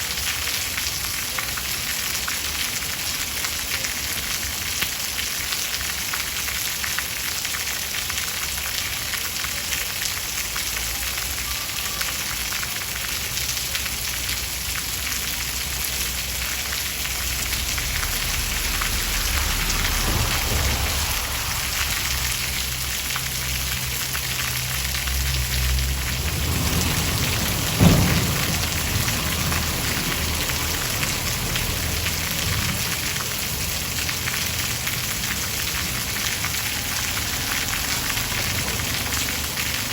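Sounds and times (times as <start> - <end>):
heavy rain hissing: 7.8 - 39.9
low rumble of thunder: 18.0 - 23.1, 25.9 - 30.8
sharp thunderclap: 18.5 - 23.0, 26.2 - 30.7.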